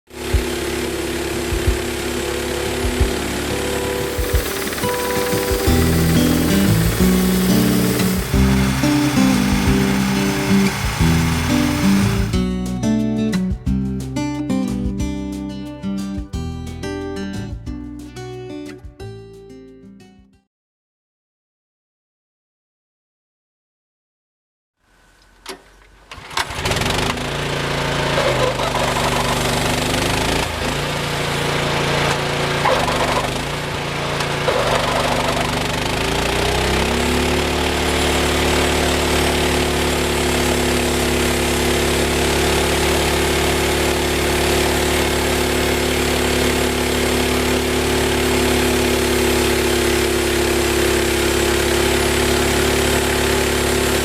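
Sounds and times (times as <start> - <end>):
sawmill engine running: 0.1 - 12.5, 26.6 - 54.0.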